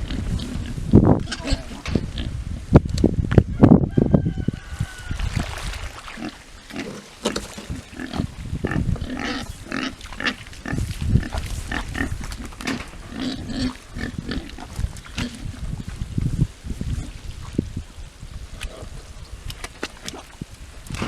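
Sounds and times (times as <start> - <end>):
pigs grunting: 0.0 - 2.4, 6.1 - 15.6.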